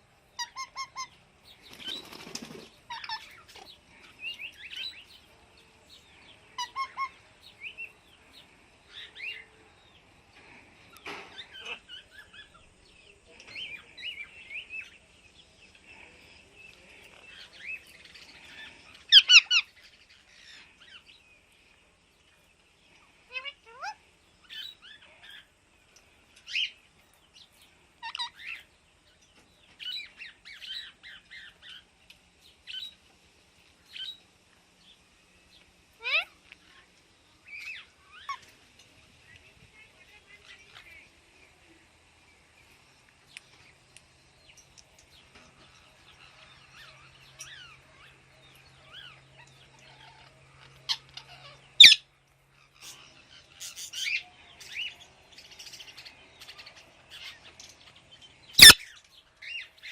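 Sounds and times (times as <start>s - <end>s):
parrots chirping and squawking: 0.4s - 1.2s, 2.9s - 3.8s, 6.5s - 7.2s, 11.0s - 12.6s, 18.4s - 19.8s, 23.3s - 24.9s, 28.0s - 28.6s, 36.0s - 36.4s, 37.5s - 38.5s, 48.9s - 54.9s, 58.6s - 59.6s.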